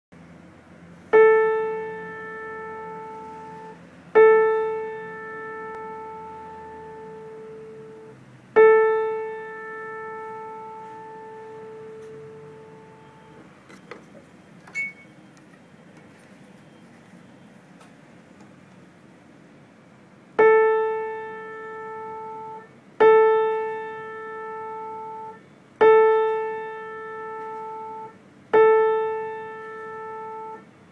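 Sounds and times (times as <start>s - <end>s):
piano note ringing: 1.1s - 13.5s, 20.4s - 30.7s.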